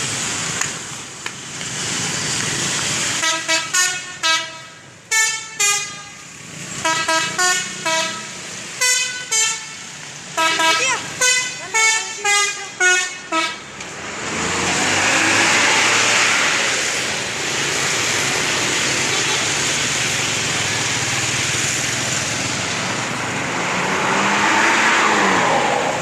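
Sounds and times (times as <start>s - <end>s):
bus engine running: 0.0s - 24.4s
road noise of passing vehicle: 0.0s - 26.0s
musical bus horn tooting: 3.2s - 13.7s.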